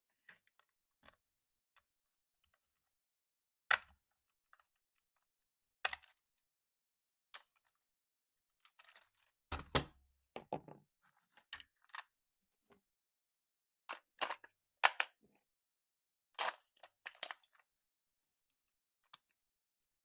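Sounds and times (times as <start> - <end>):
plastic clicks and knocks: 9.5 - 10.8.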